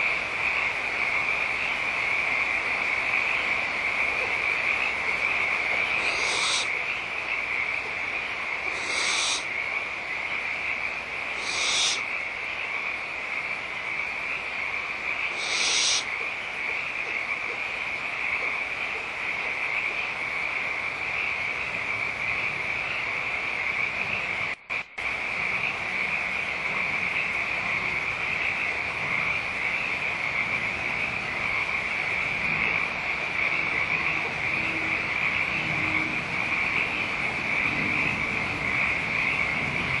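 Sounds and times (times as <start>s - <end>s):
chorus of high-pitched animal calls: 5.8s - 6.8s, 8.6s - 9.5s, 11.3s - 12.0s, 15.3s - 16.1s
short hissing bursts: 6.0s - 6.7s, 8.7s - 9.5s, 11.4s - 12.0s, 15.4s - 16.1s.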